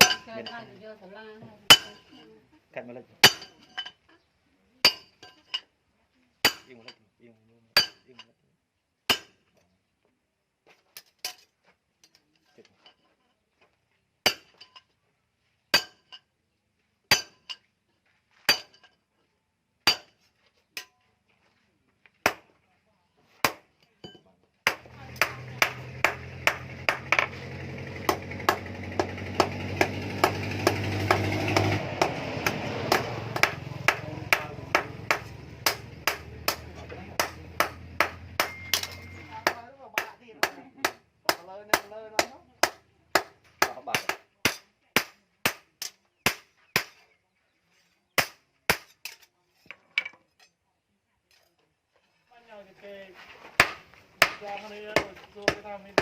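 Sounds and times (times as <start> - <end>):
hammer striking hot steel: 0.0 - 0.6, 1.7 - 2.2, 3.2 - 3.9, 4.8 - 5.6, 6.4 - 6.7, 7.8 - 8.2, 9.1 - 9.4, 14.2 - 14.8, 17.1 - 17.6, 18.5 - 18.9, 19.9 - 20.2, 23.4 - 47.0, 53.6 - 56.0.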